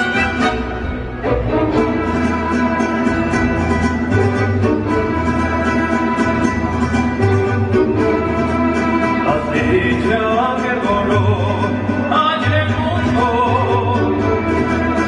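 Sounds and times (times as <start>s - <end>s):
violins playing melody: 0.0s - 10.3s.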